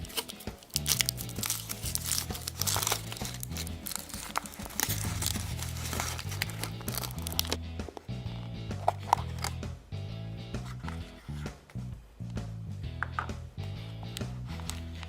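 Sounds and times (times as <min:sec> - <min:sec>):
foil wrapper crinkling and tearing: 0:00.0 - 0:07.6
background music: 0:00.0 - 0:15.0.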